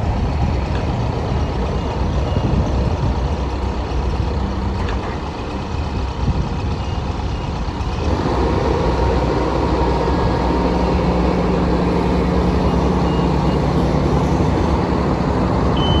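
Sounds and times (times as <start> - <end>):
diesel engine running: 0.0 - 16.0
faint high beeps: 15.7 - 16.0.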